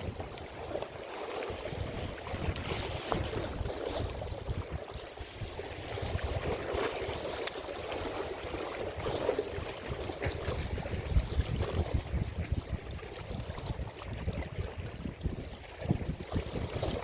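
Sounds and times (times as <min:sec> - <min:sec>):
wind buffeting microphone: 0:00.0 - 0:00.9, 0:01.5 - 0:17.0
water lapping: 0:00.0 - 0:17.0
faint clicks: 0:07.4 - 0:07.6.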